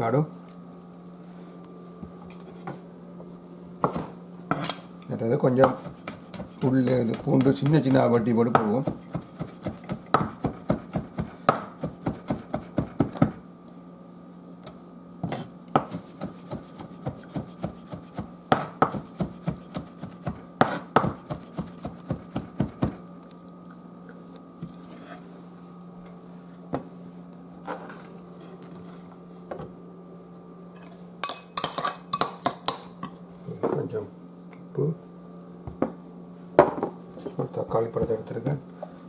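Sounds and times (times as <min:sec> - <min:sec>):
knife chopping on cutting board: 0:03.8 - 0:04.7, 0:05.6 - 0:13.4, 0:15.2 - 0:23.0.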